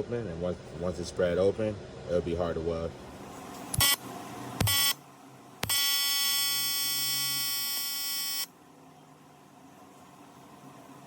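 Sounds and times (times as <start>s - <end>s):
welding arc buzzing: 4.6s - 5.0s, 5.6s - 8.5s.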